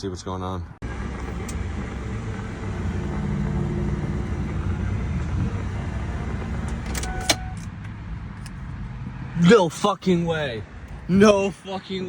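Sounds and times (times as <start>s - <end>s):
car engine running: 0.8s - 8.9s.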